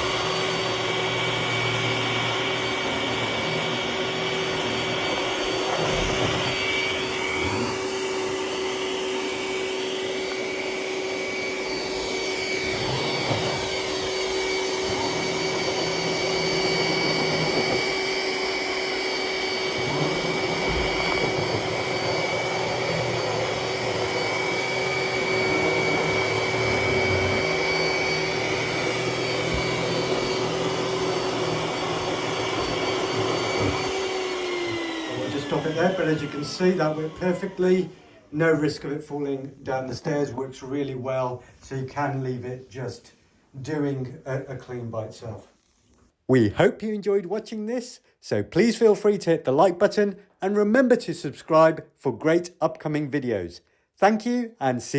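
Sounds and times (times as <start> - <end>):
robot vacuum running: 0.0 - 41.0.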